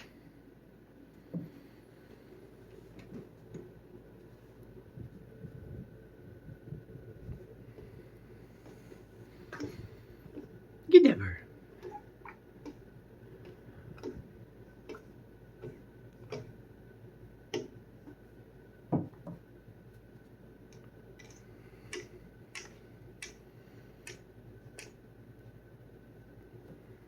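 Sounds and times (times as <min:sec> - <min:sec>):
soft clicks and ticks: 0:20.7 - 0:25.0.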